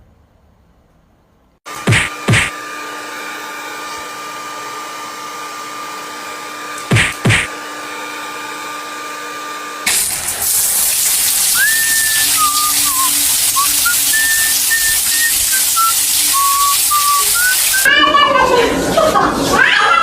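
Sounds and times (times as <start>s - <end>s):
hair dryer whining: 1.7s - 20.0s
loud steady hiss: 9.9s - 17.9s
whistled note rising: 11.4s - 17.9s.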